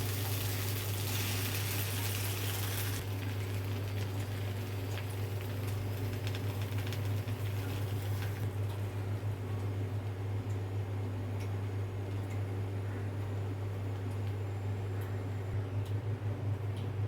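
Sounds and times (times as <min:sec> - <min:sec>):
okra sizzling in a frying pan: 0:00.0 - 0:08.5.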